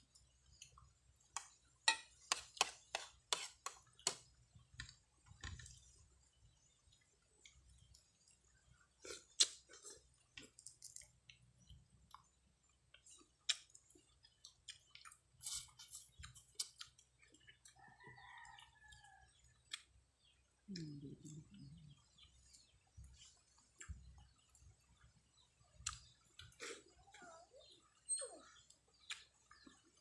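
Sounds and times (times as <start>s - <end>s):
chewing and slurping: 13.0s - 17.8s.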